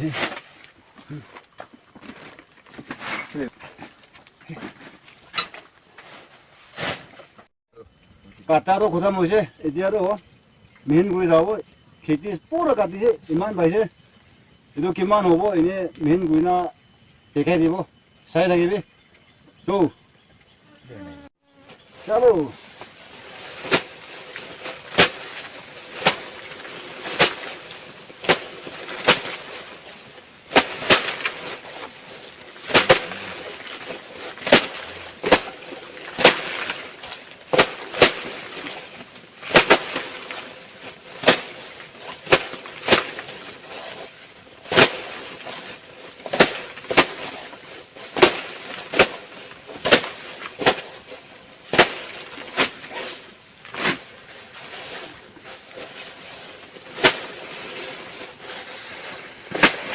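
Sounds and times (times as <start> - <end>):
sickle cutting rice stalks: 0.0 - 1.4, 2.0 - 7.5, 21.0 - 59.9.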